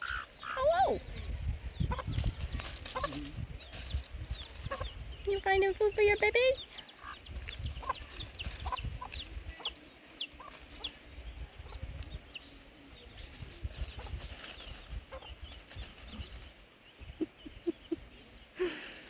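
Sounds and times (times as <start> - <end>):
hen clucking: 0.0 - 12.5, 14.9 - 16.4
chicks peeping: 0.0 - 18.6.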